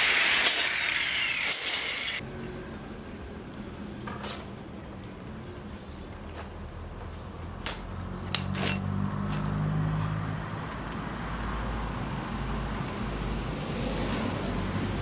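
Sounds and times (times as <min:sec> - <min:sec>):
sharp clinks and knocks: 0:02.8 - 0:09.7
vehicle engine hum: 0:06.8 - 0:15.0.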